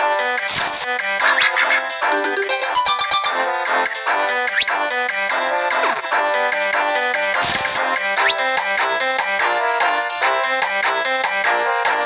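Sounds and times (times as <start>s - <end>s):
electronic melody with pitch sweeps: 2.1s - 4.1s.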